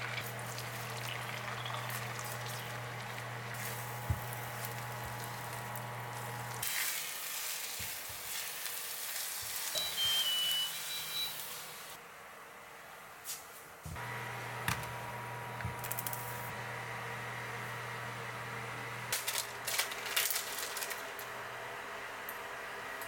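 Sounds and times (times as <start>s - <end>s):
food sizzling in a frying pan: 3.5s - 12.0s
short high beeps: 9.8s - 11.5s.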